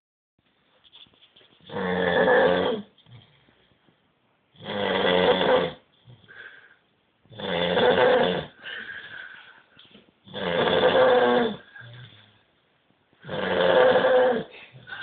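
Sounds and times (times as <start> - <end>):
man snoring loudly: 1.7 - 2.8, 4.6 - 5.8, 7.3 - 8.6, 10.3 - 12.1, 13.2 - 14.5
soft breathing: 6.0 - 7.0, 8.6 - 10.0.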